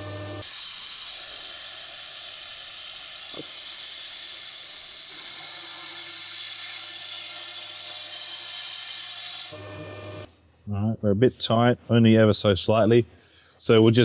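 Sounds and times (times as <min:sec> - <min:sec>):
coolant spray hissing: 0:00.4 - 0:09.5
lathe boring steel: 0:00.4 - 0:10.3.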